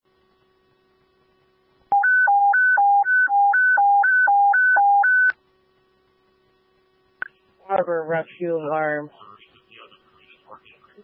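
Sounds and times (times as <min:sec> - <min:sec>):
faint radio hum: 0:07.2 - 0:11.0.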